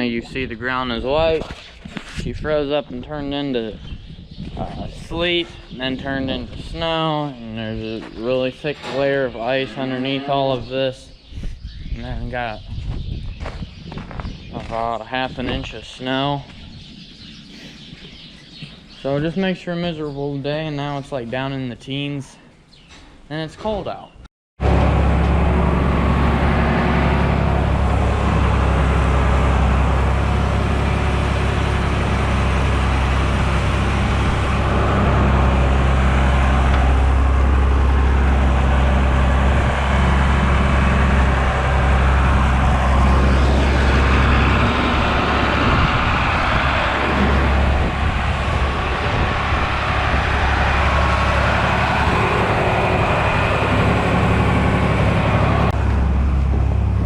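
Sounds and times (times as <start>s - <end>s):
vehicle engine running steadily: 24.6s - 57.0s.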